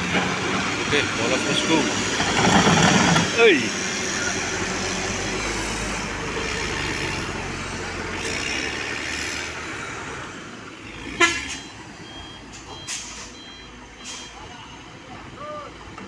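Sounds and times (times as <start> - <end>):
heavy vehicle engine running: 0.0 - 16.0
horn toot: 11.1 - 11.7.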